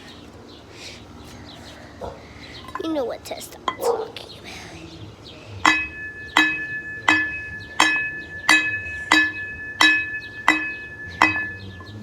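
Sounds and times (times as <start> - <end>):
bright ringing clinks: 5.6 - 12.0.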